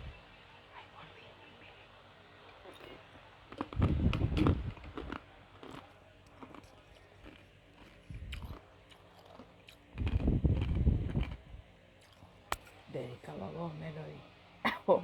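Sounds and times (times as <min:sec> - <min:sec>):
ice being crunched and chewed: 0:02.7 - 0:11.4, 0:12.0 - 0:12.8.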